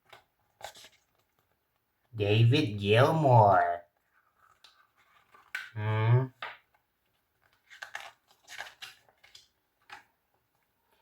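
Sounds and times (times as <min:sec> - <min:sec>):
paper pages rustling: 0:00.0 - 0:01.8, 0:04.0 - 0:05.7, 0:06.7 - 0:11.0
person speaking: 0:02.1 - 0:03.9, 0:05.8 - 0:06.4.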